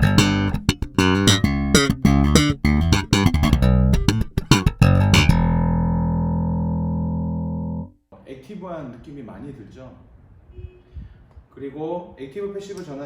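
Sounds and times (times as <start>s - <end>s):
plucked electric bass notes: 0.0s - 8.0s.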